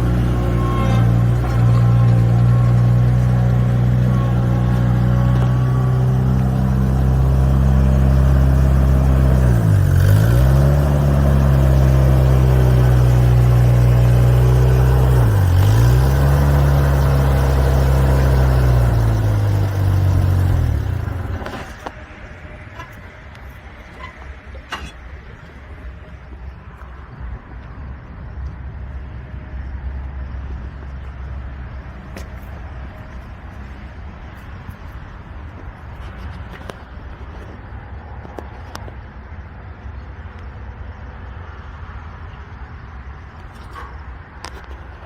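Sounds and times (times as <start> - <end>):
skid steer engine running: 0.0 - 27.7.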